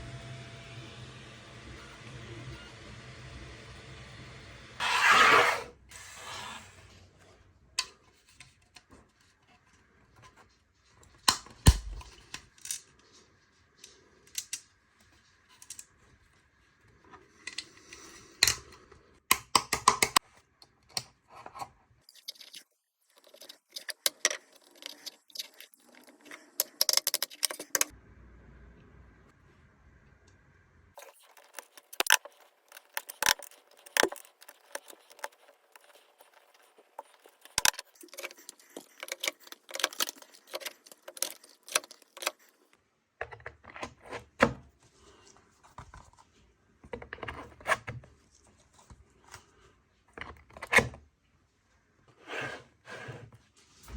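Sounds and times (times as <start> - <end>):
loud scrape: 4.8 - 7.1.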